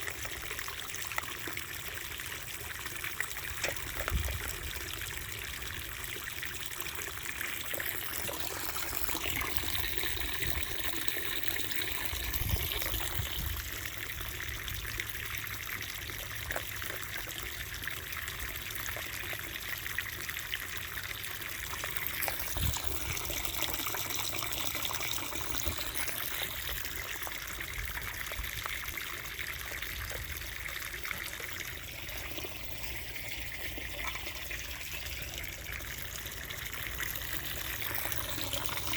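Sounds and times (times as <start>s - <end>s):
water trickling into container: 0.0s - 38.9s.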